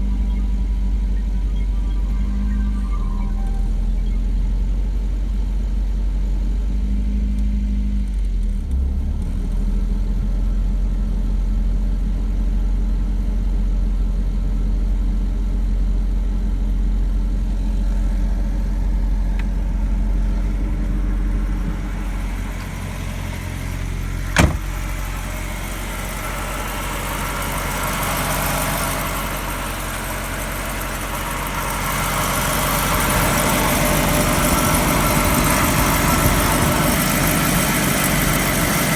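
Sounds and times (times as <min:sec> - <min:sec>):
car engine humming: 0:00.0 - 0:07.5, 0:16.4 - 0:38.9.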